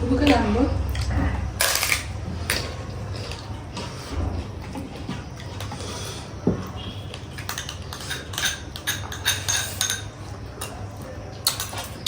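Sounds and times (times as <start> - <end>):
dishes and cutlery clinking: 6.4 - 12.0.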